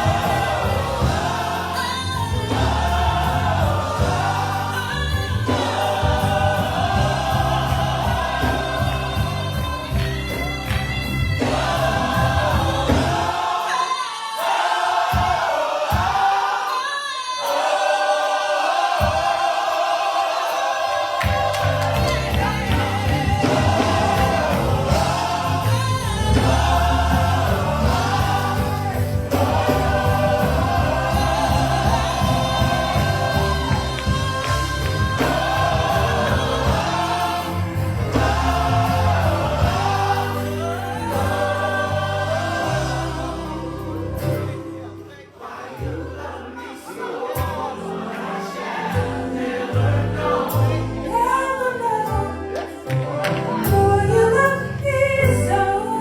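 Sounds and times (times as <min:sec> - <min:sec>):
instrumental backing: 0:00.0 - 0:13.6, 0:19.0 - 0:46.4
gospel choir singing: 0:00.0 - 0:56.0.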